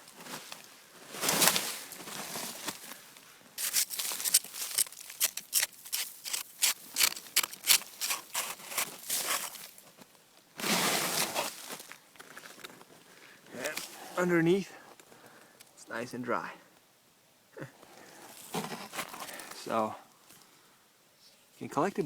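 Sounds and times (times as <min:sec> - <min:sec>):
snow crunching: 0:00.1 - 0:09.9, 0:10.6 - 0:12.6
rushing scrape on snow: 0:05.9 - 0:09.7, 0:10.6 - 0:11.8.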